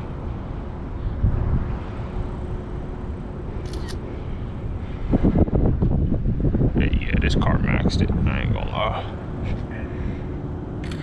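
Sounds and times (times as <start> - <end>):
faint hum: 0.0 - 11.0
low outdoor rumble: 0.0 - 11.0
camera shutter clicks: 3.6 - 4.0.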